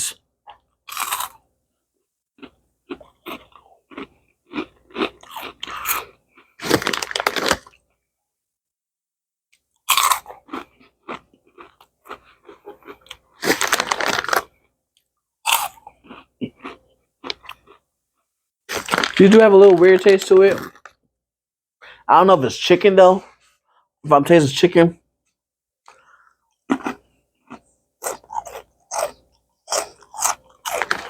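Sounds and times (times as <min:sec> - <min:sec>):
person chewing crunchy chips: 0:00.5 - 0:01.5, 0:02.4 - 0:07.9, 0:09.7 - 0:14.7, 0:15.4 - 0:17.8, 0:18.7 - 0:21.0, 0:25.9 - 0:31.0.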